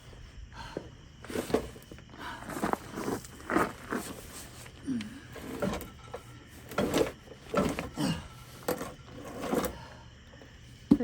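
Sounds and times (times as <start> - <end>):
tools knocking and scraping: 5.4 - 7.9.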